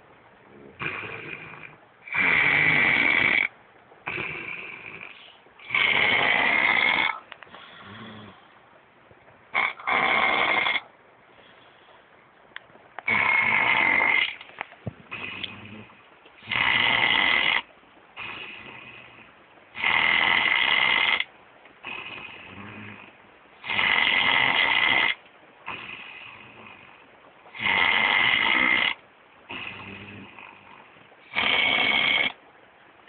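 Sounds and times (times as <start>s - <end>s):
dog snoring: 0.6s - 8.5s, 9.5s - 10.9s, 13.0s - 14.4s, 15.0s - 32.4s.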